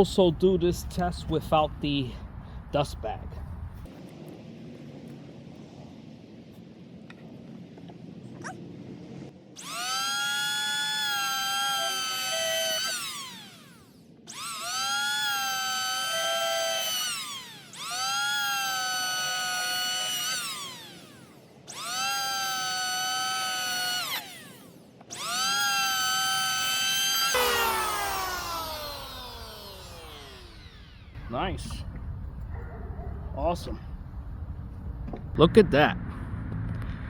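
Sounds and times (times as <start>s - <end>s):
electric hand planer whining: 9.6s - 31.2s.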